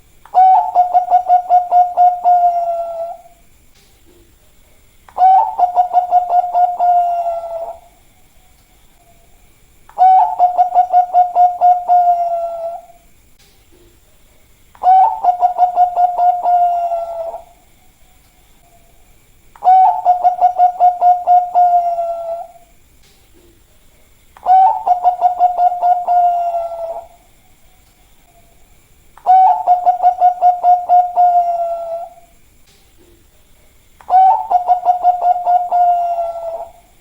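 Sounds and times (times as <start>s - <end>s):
dove cooing: 0.3s - 3.4s, 5.1s - 7.9s, 9.9s - 13.0s, 14.8s - 17.6s, 19.6s - 22.7s, 24.4s - 27.3s, 29.2s - 32.3s, 34.0s - 37.0s.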